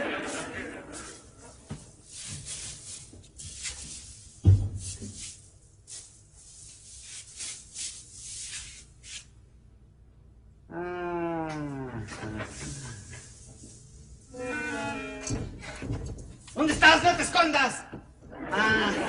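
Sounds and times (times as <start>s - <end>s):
short rustling: 0.1s - 9.3s.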